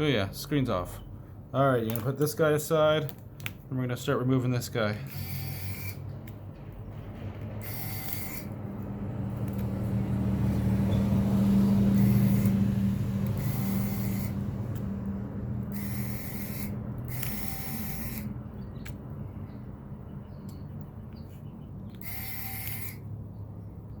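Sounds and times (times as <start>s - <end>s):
small screwdriver scraping screws: 5.0s - 6.1s, 7.6s - 8.5s, 15.7s - 18.3s, 21.9s - 23.0s.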